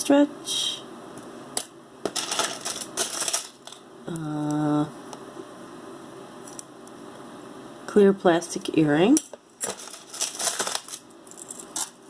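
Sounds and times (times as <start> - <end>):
jewelry clicking and rustling: 1.6 - 3.8, 9.2 - 12.0
woman humming: 4.1 - 5.0.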